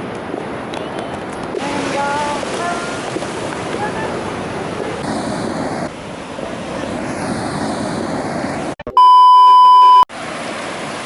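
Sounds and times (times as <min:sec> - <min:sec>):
ocean surf: 0:00.0 - 0:08.8, 0:09.6 - 0:11.0
loud steady beep tone: 0:08.9 - 0:10.1.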